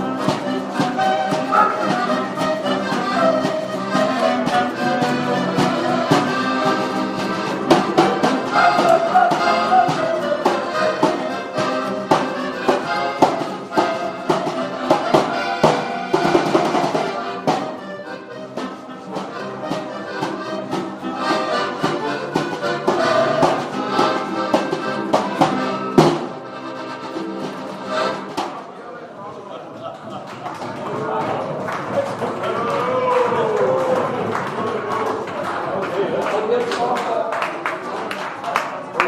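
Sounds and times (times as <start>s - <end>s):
sharp percussive hits: 0.0s - 17.9s
live band jamming: 0.0s - 28.8s.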